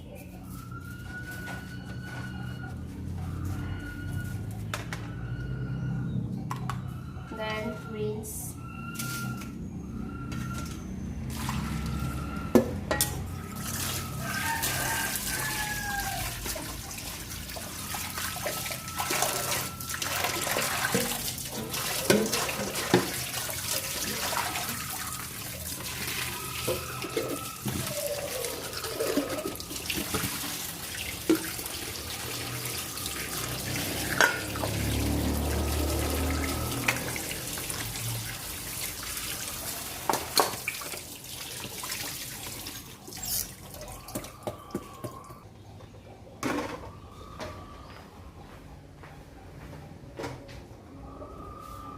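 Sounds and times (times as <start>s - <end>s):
water running: 13.6s - 44.2s.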